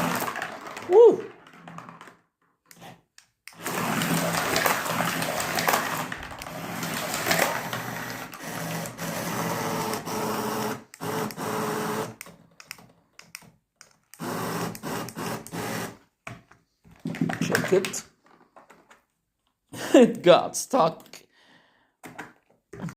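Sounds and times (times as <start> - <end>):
toy car clattering in tube: 3.6 - 9.0
toy car motor buzzing: 3.6 - 12.2, 14.2 - 16.0.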